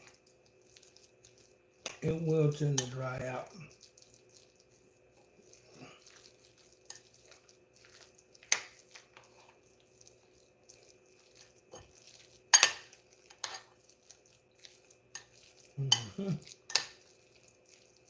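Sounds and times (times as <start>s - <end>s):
utensil stirring salad in a bowl: 0.0s - 18.0s
utensil clinking against bowl: 12.5s - 13.7s.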